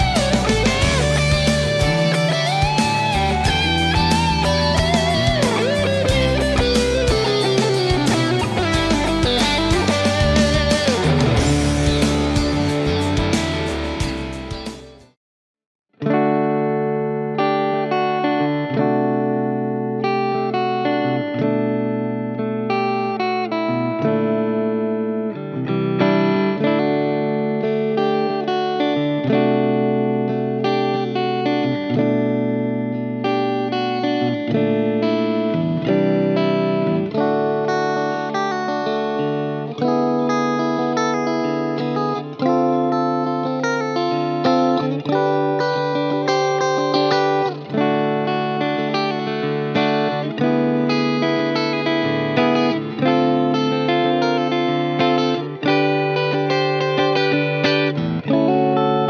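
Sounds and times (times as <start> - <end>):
backing track: 0.0 - 15.1
clean electric guitar chords: 0.0 - 15.1, 16.0 - 59.0.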